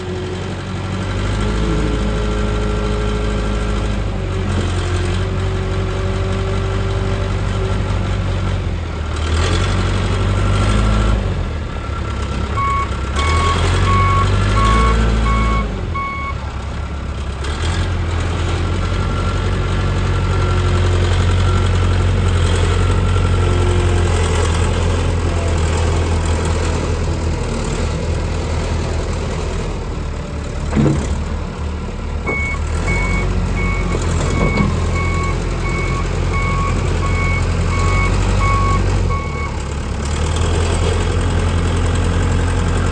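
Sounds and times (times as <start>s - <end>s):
diesel engine running: 0.0s - 42.9s
reversing alarm beeping: 12.6s - 16.4s, 32.3s - 39.6s.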